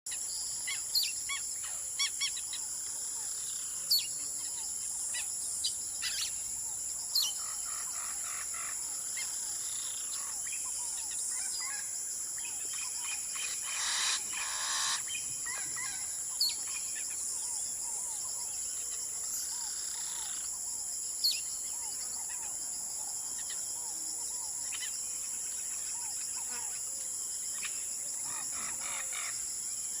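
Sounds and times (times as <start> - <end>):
high-pitched insect drone: 0.3 - 30.0
birds chirping and calling: 7.1 - 20.5.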